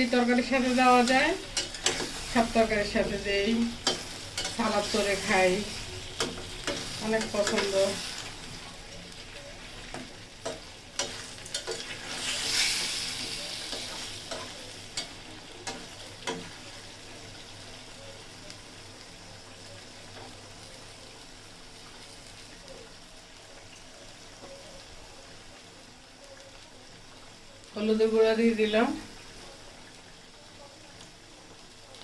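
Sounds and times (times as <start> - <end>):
food sizzling in a pan: 0.0 - 32.0
spoon clicking against pan: 3.8 - 4.7.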